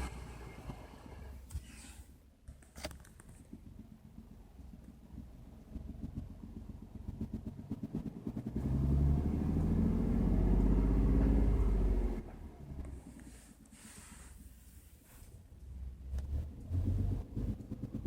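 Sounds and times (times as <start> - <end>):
car engine revving: 3.5 - 13.4, 15.8 - 18.0.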